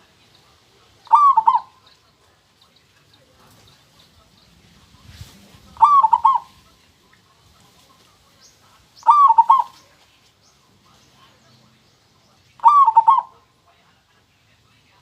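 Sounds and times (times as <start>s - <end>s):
dove cooing: 0.9s - 2.1s, 5.7s - 6.7s, 9.0s - 10.0s, 12.6s - 13.5s.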